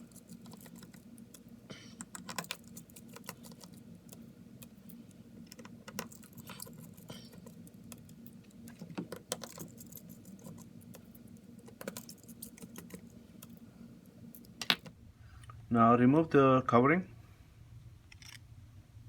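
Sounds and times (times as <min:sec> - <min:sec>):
low steady hum: 0:00.0 - 0:19.0.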